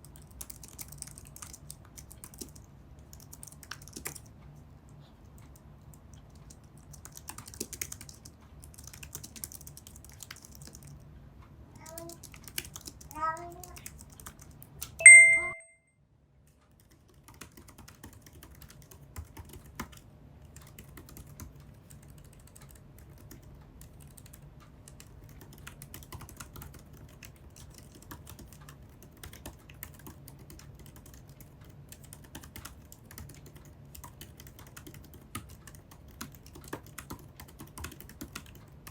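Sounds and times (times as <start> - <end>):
keyboard typing: 0.0 - 4.4, 5.2 - 11.0, 11.8 - 15.6, 16.7 - 38.9
bright ding: 15.0 - 15.7.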